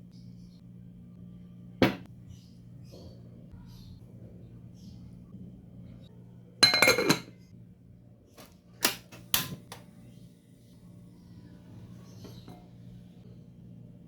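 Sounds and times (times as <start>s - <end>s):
utensils clinking on cookware: 6.6s - 7.4s.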